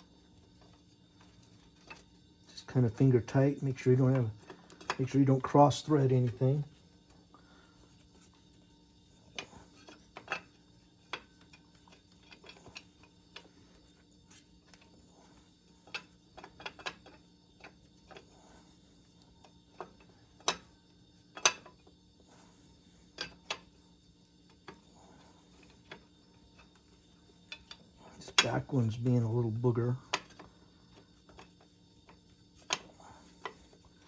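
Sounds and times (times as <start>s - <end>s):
metallic clicks of bolts and tools: 9.4s - 10.5s, 21.4s - 21.8s.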